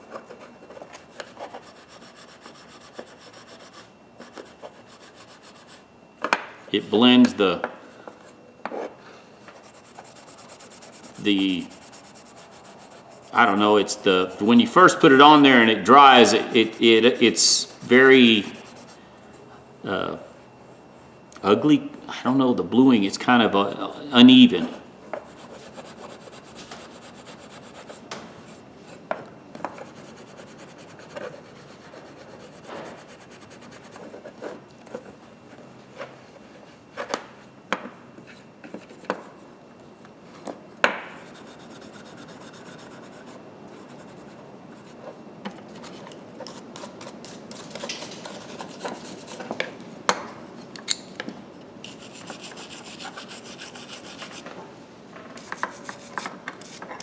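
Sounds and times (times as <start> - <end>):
rubbing scratch on metal: 1.0 - 5.8, 9.4 - 19.0, 25.3 - 28.6, 29.8 - 34.2, 41.2 - 45.0, 46.4 - 49.5, 51.9 - 54.4, 55.4 - 57.0.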